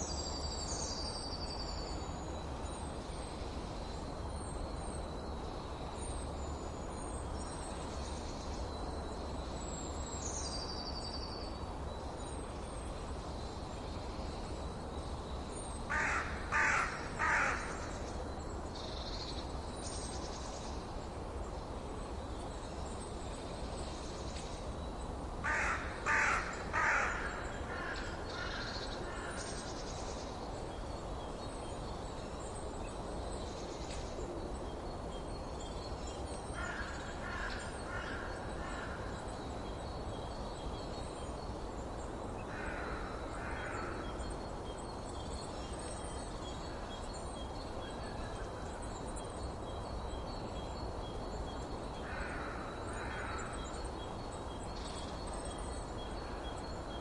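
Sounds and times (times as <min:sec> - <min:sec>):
steady low hiss: 0:00.0 - 0:57.0
loud bird calls: 0:15.9 - 0:17.9, 0:25.4 - 0:29.8.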